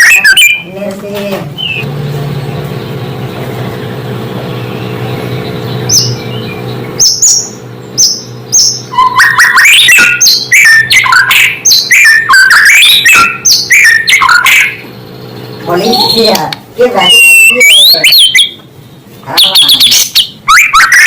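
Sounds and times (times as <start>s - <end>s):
bird singing whistled notes: 0.0s - 0.7s, 4.5s - 16.4s, 17.0s - 18.6s, 19.4s - 21.0s
steady low hum: 0.0s - 21.0s.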